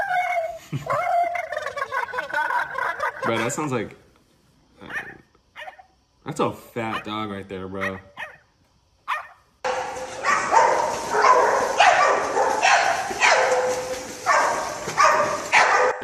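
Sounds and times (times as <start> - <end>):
dog barking: 4.8 - 5.9, 6.9 - 7.2, 7.8 - 8.5, 9.1 - 16.0.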